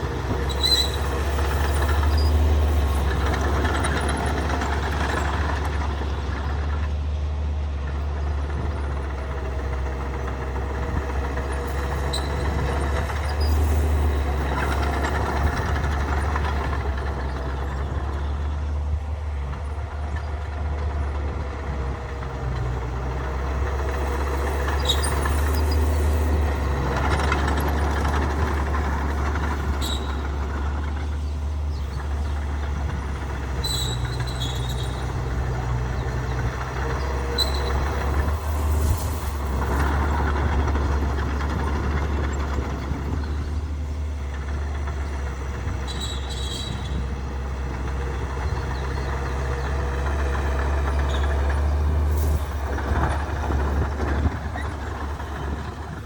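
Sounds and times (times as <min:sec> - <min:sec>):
heavy diesel machinery engine drone: 0:00.0 - 0:56.0
high-pitched squeaks or hisses: 0:00.5 - 0:01.2.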